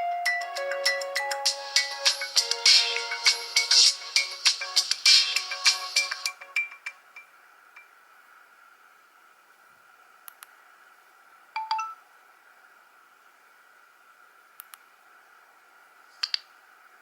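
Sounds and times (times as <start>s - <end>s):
mobile phone ringtone: 11.6s - 12.0s
faint clicks: 16.2s - 16.5s.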